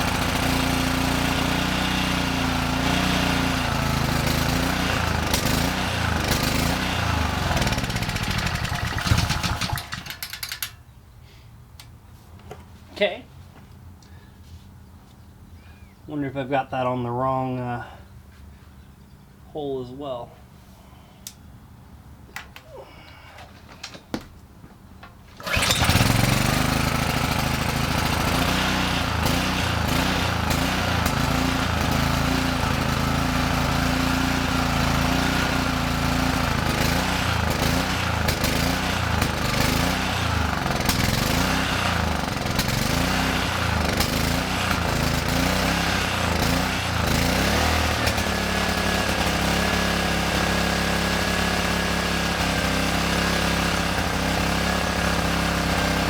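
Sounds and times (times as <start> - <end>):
small engine running: 0.0 - 10.7, 25.4 - 56.0.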